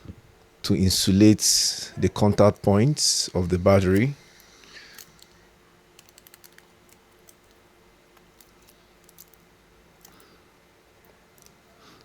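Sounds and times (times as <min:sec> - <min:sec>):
tape crackling: 0:03.8 - 0:10.3.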